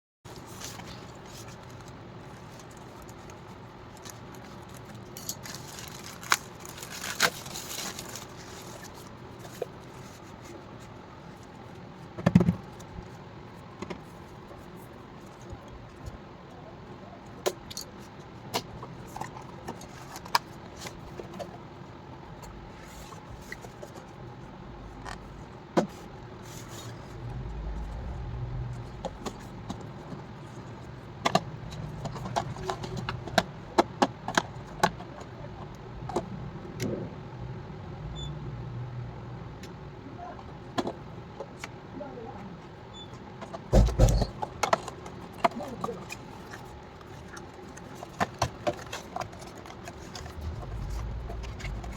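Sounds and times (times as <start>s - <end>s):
hands handling packaging: 0.3s - 10.6s
low rumble: 26.8s - 30.0s, 50.1s - 51.9s.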